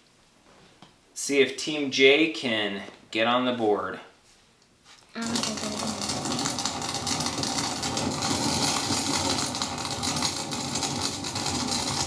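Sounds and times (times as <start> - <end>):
fire crackling and popping: 5.4 - 12.0.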